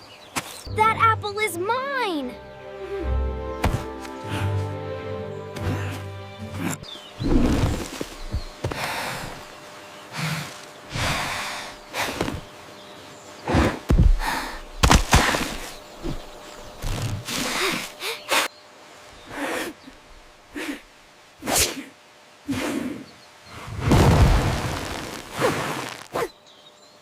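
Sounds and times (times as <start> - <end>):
heavy low thuds: 3.6 - 4.6, 5.5 - 9.5.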